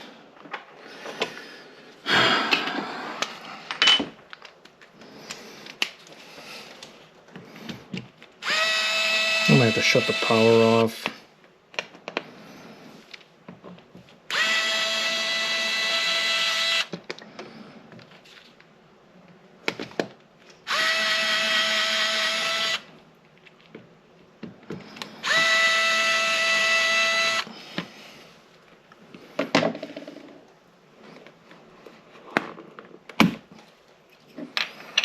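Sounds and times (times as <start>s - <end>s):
power drill whining: 8.4s - 10.8s, 14.3s - 16.9s, 20.7s - 22.9s, 25.2s - 27.5s.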